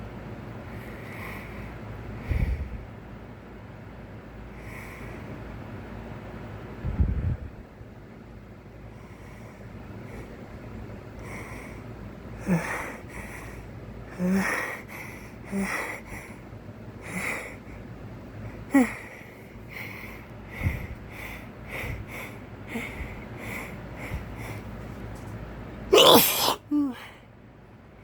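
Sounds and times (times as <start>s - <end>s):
man sniffing through nose: 25.9s - 26.6s.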